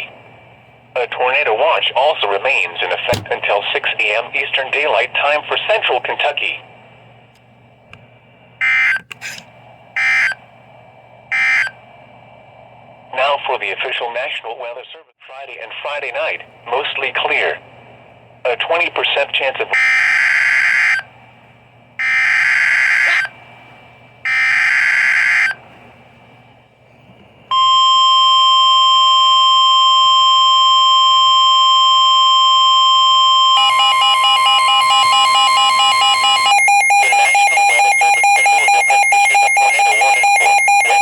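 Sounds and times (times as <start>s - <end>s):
steady warning alarm tone: 8.6s - 9.4s, 10.0s - 10.4s, 11.3s - 11.8s, 19.6s - 21.1s, 22.0s - 23.4s, 24.2s - 25.6s, 27.5s - 41.0s
harsh alarm tone pulsing beeps: 10.0s - 10.4s, 11.3s - 11.8s, 19.8s - 21.0s, 22.0s - 23.3s, 24.3s - 25.6s, 27.5s - 41.0s
screeching data bursts: 33.6s - 41.0s.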